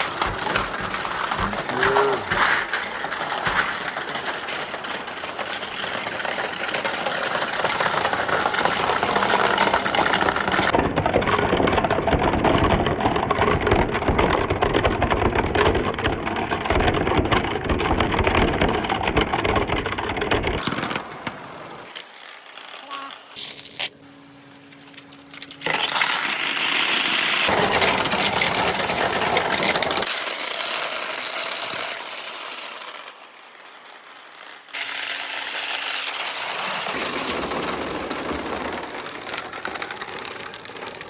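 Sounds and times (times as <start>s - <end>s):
glass marbles rattling: 20.6s - 27.5s, 30.0s - 37.0s.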